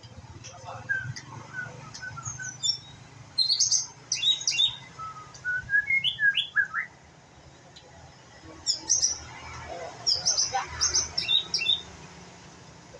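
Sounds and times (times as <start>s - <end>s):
bird singing whistled notes: 0.7s - 7.0s, 10.1s - 11.9s.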